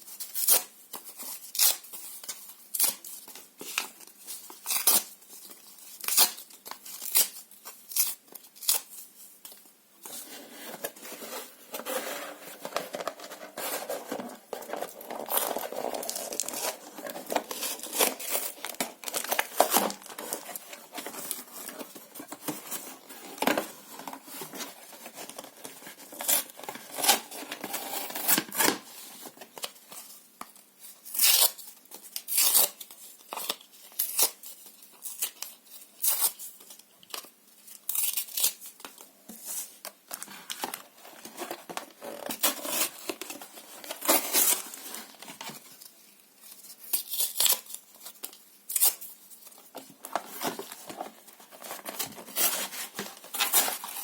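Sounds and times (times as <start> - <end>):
paper crinkling: 1.2 - 30.1.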